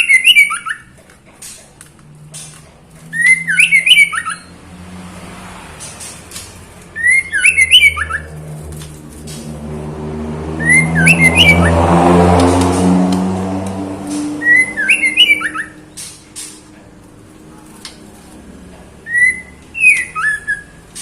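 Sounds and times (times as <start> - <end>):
passing vehicle engine hum: 0.0 - 21.0
bird calling rising gliding notes: 7.0 - 8.6, 9.4 - 15.9.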